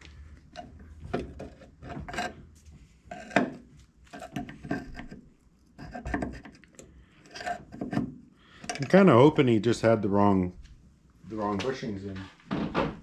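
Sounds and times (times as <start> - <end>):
hand tools scraping metal: 1.4 - 2.4.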